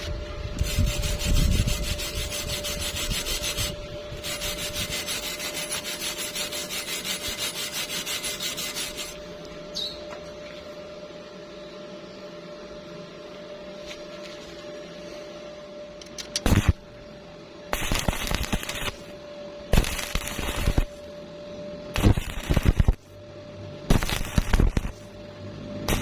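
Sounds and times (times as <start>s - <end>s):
steady hum: 0.0s - 26.0s
welding arc crackling: 0.6s - 9.2s, 16.4s - 16.8s, 17.7s - 19.1s, 19.7s - 21.0s, 22.0s - 23.1s, 23.9s - 25.2s.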